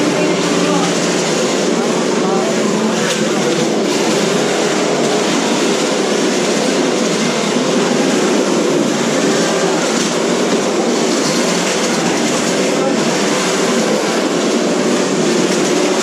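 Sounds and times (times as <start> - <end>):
rc cars whirring: 0.0 - 16.0.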